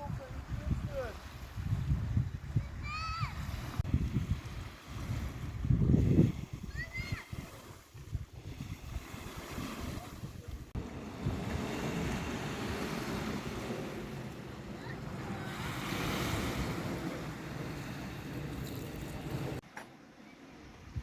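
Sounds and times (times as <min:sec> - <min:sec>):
wind buffeting microphone: 0:00.0 - 0:19.6, 0:20.6 - 0:21.0
sea waves washing ashore: 0:00.0 - 0:21.0.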